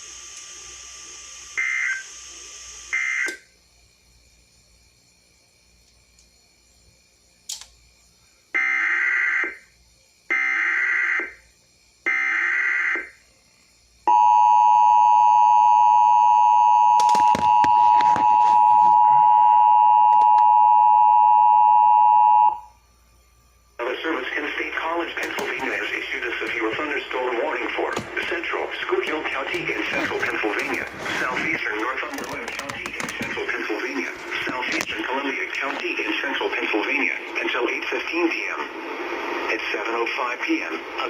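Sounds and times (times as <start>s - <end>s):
static crackles: 23.8s - 41.0s.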